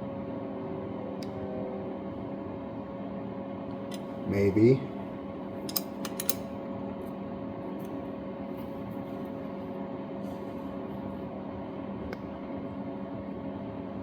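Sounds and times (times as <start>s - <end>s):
mechanical room hum: 0.0s - 14.0s
wrench metallic clicks: 5.7s - 6.4s.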